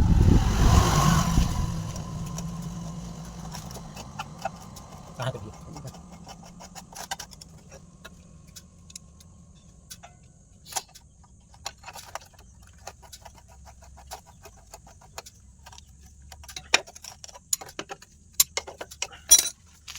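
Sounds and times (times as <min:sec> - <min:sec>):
metal tools clicking and clinking: 0:16.4 - 0:19.9.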